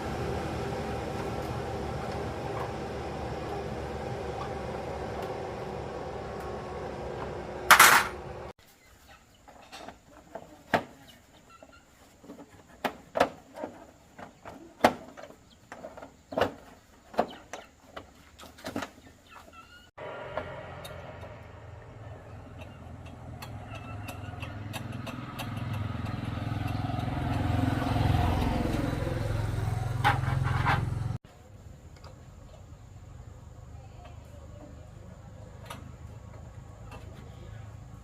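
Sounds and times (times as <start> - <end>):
small motorcycle engine running: 0.0 - 8.5, 20.0 - 31.2
chickens clucking: 22.2 - 27.4.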